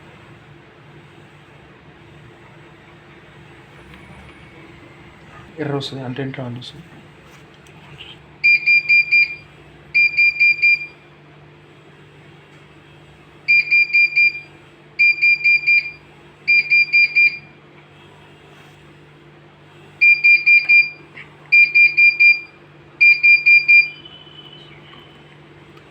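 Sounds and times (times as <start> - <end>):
rapid high beeps: 8.4 - 9.4, 10.0 - 11.0, 13.5 - 17.5, 20.0 - 21.0, 21.6 - 24.6.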